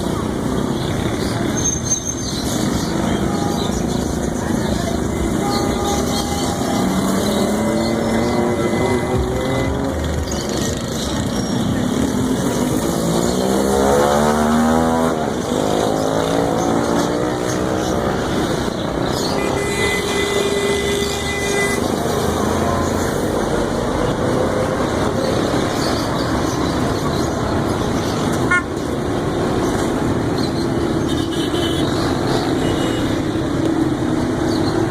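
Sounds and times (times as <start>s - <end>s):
engine revving: 4.5s - 26.9s
car horn: 5.1s - 10.2s, 19.3s - 23.0s, 28.4s - 28.8s, 31.1s - 32.0s, 32.6s - 33.2s.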